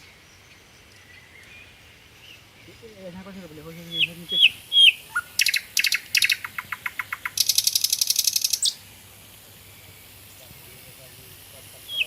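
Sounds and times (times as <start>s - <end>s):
songbird singing: 0.0s - 12.0s.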